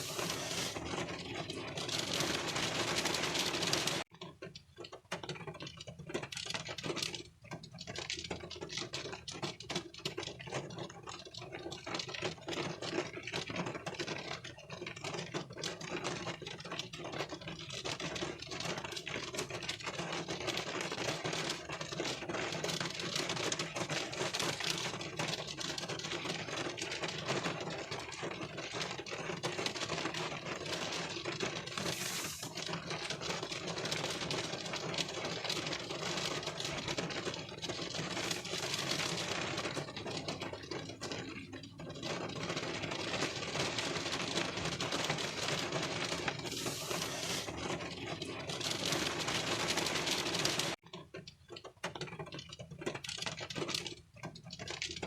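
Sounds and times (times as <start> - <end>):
rain pattering on windshield: 0.0 - 55.0.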